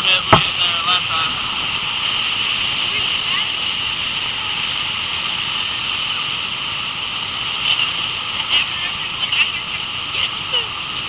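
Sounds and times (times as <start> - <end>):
sharp splashes or knocks: 0.3 - 0.7.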